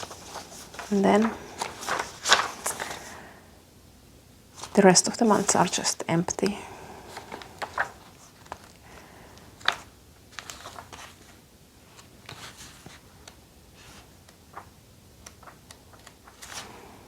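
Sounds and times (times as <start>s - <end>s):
paper pages turning: 0.0s - 3.1s, 7.1s - 8.8s, 9.5s - 16.8s.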